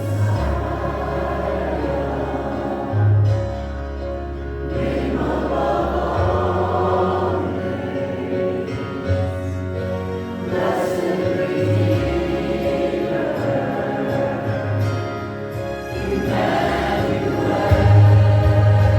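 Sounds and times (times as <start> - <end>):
held low bass notes: 0.0 - 7.7, 15.6 - 18.9
voices singing together: 0.0 - 18.9.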